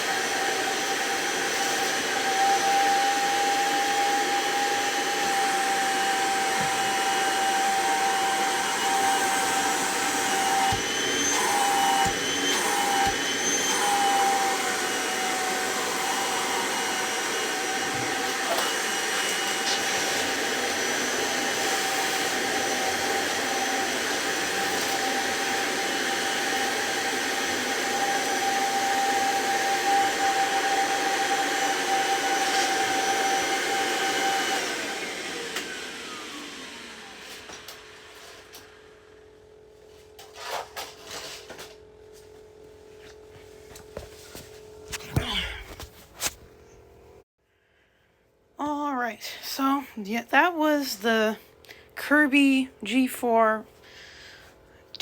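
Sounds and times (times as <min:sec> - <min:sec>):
upright vacuum cleaner running: 0:00.0 - 0:39.5.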